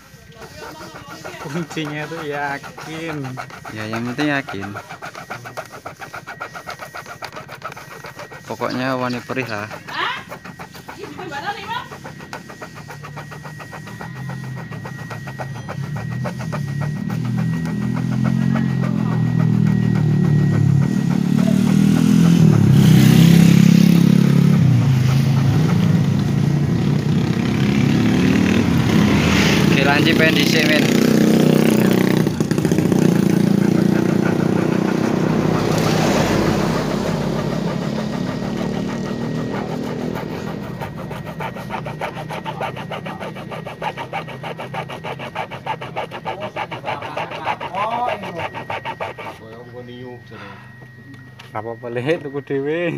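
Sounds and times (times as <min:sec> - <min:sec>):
hacksaw cutting plastic: 0:00.0 - 0:49.8
motorcycle engine running: 0:00.0 - 0:52.4
low engine hum: 0:32.3 - 0:42.4.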